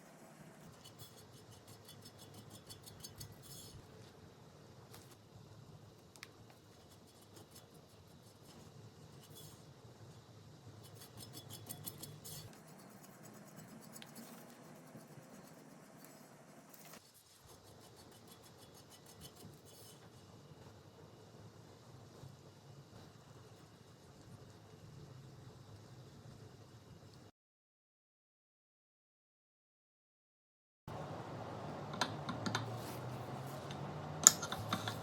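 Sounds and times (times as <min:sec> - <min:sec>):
quick scraping strokes: 0:10.8 - 0:20.0.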